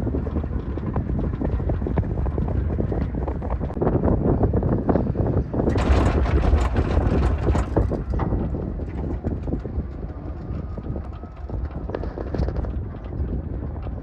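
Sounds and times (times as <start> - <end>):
wind buffeting microphone: 0.0 - 14.0
small irregular clicks and knocks: 5.7 - 14.0.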